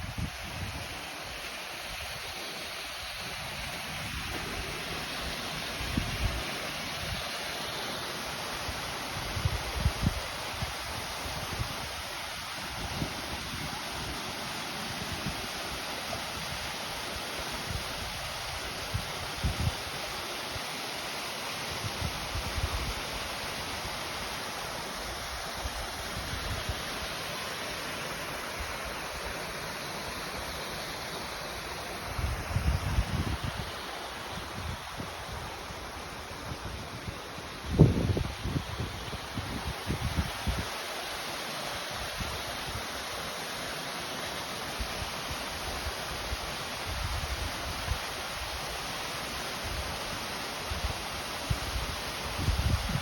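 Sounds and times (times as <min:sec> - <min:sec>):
waterfall rushing: 0:00.0 - 0:53.0
wind bumps on microphone: 0:36.6 - 0:40.6.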